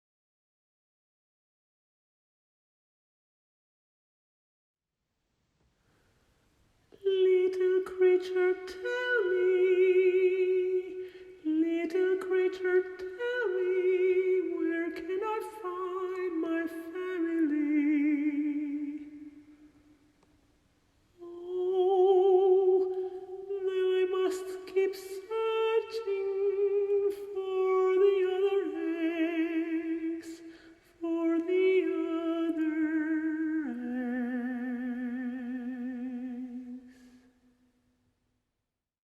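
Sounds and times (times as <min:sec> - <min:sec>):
woman singing unaccompanied: 0:06.9 - 0:19.6, 0:21.2 - 0:37.1.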